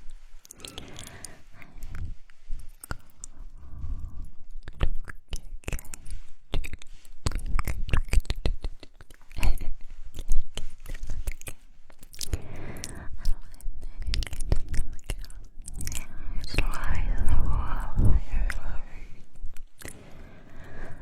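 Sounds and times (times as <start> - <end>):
wet mouth clicks and smacks: 0.0 - 20.2
person breathing: 0.5 - 4.5, 12.2 - 14.1, 15.9 - 21.0.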